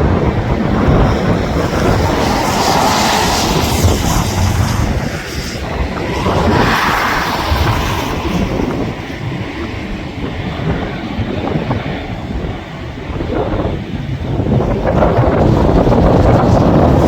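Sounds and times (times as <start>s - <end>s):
jet airliner rumbling by: 0.0s - 17.0s
wind buffeting microphone: 0.0s - 17.0s.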